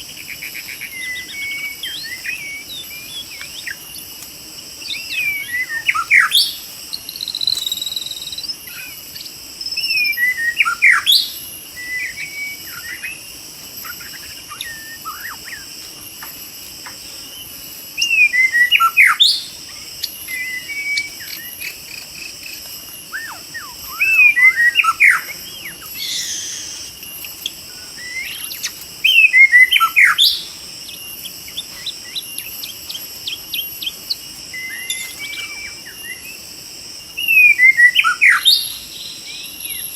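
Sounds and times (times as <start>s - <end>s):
high insect drone: 0.0s - 39.9s
bird singing whistled phrases: 0.4s - 3.8s, 9.8s - 13.2s, 18.0s - 21.7s, 22.9s - 36.4s, 37.2s - 39.9s.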